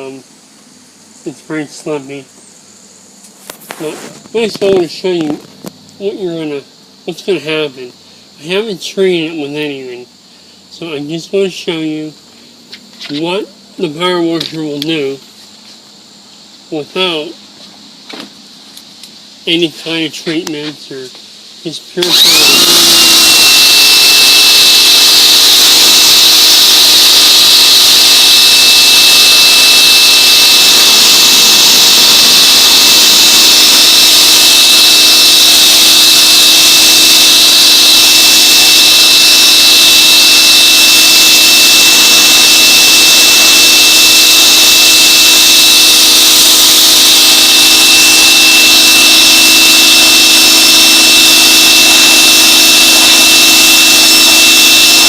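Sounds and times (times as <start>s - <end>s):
motor and pump whine: 17.2s - 55.0s
pressure washer jet hissing: 22.1s - 55.0s.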